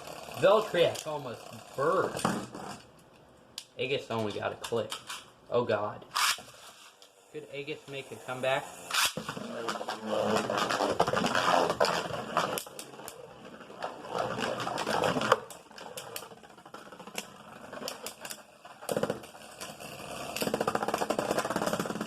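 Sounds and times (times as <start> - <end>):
spinning tops clattering: 7.9 - 22.0.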